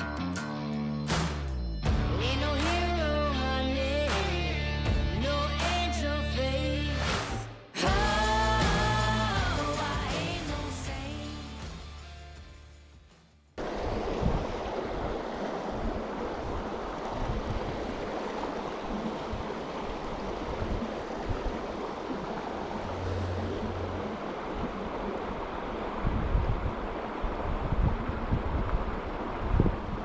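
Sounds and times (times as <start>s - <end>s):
river water rushing: 13.6s - 30.0s
wind buffeting microphone: 13.6s - 30.0s.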